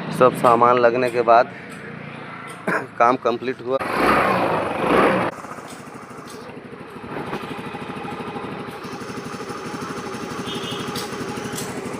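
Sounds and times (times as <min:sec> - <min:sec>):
scooter engine idling: 0:04.5 - 0:11.9.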